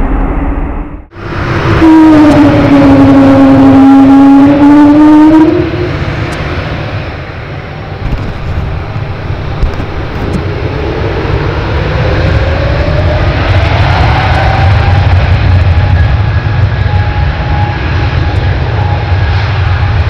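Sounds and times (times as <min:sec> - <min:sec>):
jet engines moaning tone: 0:00.0 - 0:20.0
low engine rumble: 0:05.2 - 0:20.0.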